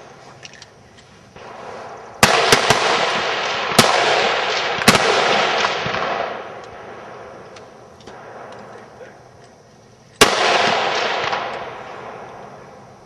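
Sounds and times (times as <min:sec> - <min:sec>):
rifle shots: 0:01.4 - 0:07.4, 0:10.2 - 0:12.7.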